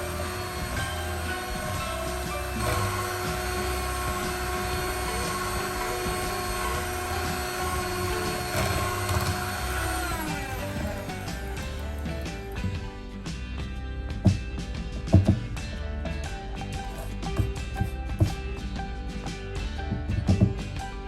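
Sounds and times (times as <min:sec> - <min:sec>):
small electric motor whirring: 0:00.0 - 0:12.6.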